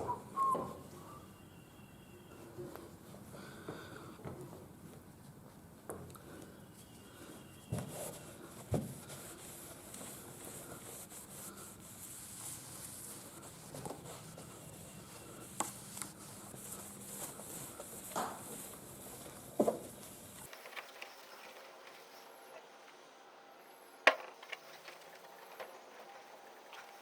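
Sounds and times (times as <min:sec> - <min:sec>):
cloth rubbing on car hood: 0:07.8 - 0:20.4.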